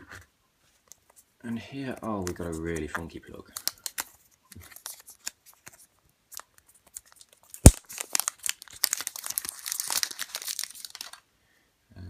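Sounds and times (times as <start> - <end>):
plastic packaging crinkling and tearing: 2.1 - 11.2.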